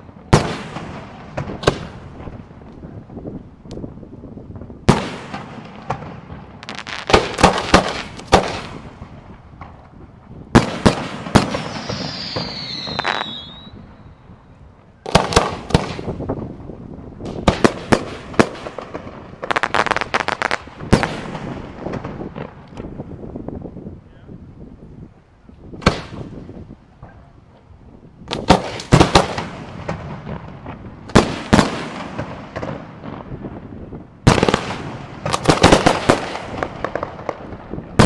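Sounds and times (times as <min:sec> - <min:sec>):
firework shells bursting: 0:06.6 - 0:08.8
descending firework whistle: 0:11.6 - 0:14.3.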